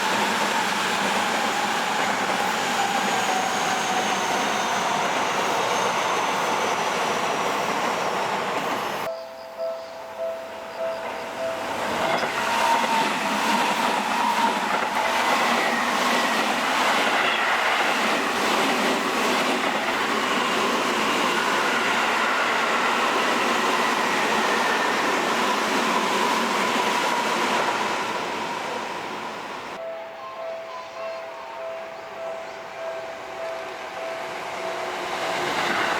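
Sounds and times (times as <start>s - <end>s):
faint train whine: 0.0s - 35.9s
train wheels clattering on rails: 11.0s - 27.8s.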